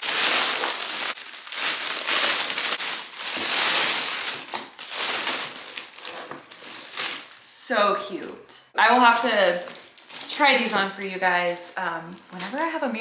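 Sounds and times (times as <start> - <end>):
crinkly packaging rustling: 0.0 - 7.3, 9.0 - 12.7.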